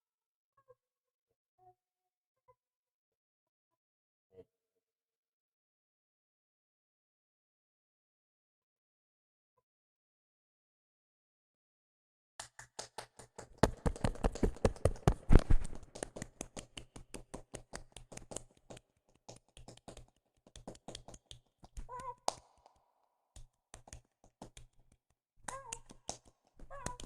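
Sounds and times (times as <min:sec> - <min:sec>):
rapid tapping: 0:12.4 - 0:22.5, 0:23.7 - 0:24.8, 0:25.5 - 0:27.0.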